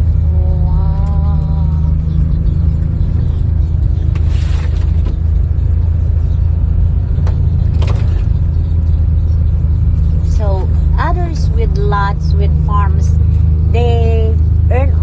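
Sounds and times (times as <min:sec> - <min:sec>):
vehicle driving rumble: 0:00.0 - 0:15.0.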